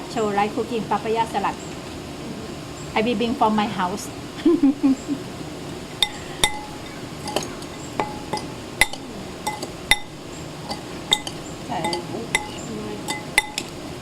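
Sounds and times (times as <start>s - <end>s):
utensil clinking against bowl: 6.0s - 13.9s.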